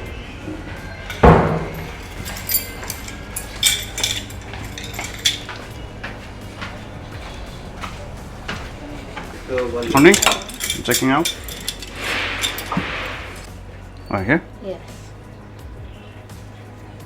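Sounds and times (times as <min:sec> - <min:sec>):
light metallic clinks: 0:00.8 - 0:14.1
heavy thud: 0:01.2 - 0:02.1.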